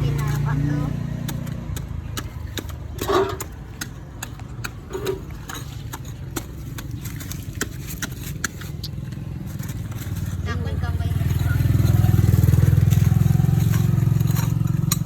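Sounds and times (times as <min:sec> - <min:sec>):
shovel digging in stony soil: 0:00.0 - 0:15.0.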